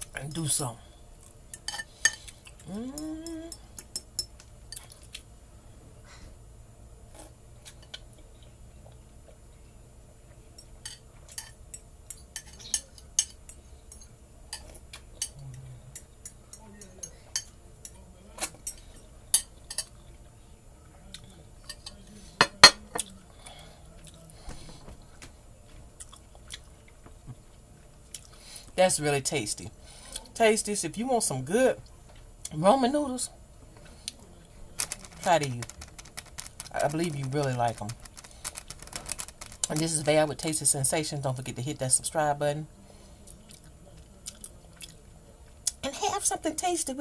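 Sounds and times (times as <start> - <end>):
dishes and cutlery clinking: 1.5 - 2.7, 10.6 - 15.4, 16.0 - 20.0, 21.6 - 23.2.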